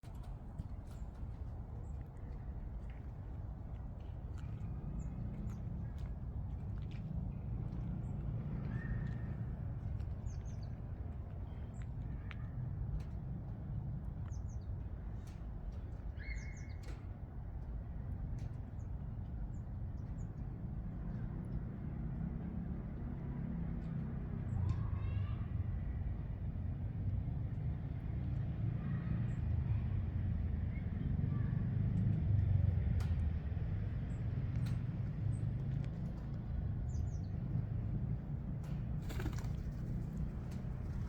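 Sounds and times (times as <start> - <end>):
low outdoor rumble: 0.0 - 41.0.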